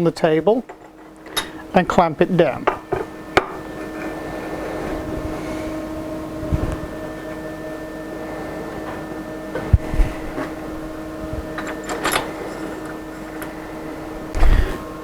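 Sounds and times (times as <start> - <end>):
machine hum: 0.0 - 15.0
clamps clicking and rattling: 0.6 - 1.6, 11.5 - 13.6.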